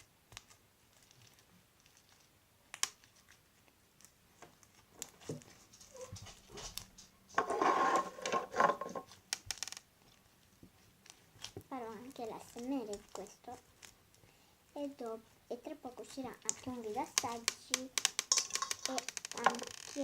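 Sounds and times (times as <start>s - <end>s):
wet crackling and squishing: 0.0s - 7.0s, 9.0s - 20.0s
slime being kneaded: 16.0s - 20.0s.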